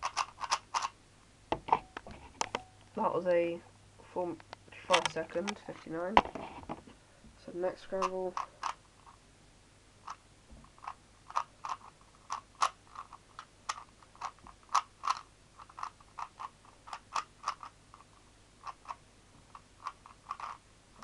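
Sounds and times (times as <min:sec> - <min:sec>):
puzzle cube clicking: 0:00.0 - 0:01.0, 0:07.9 - 0:09.2, 0:10.0 - 0:20.6.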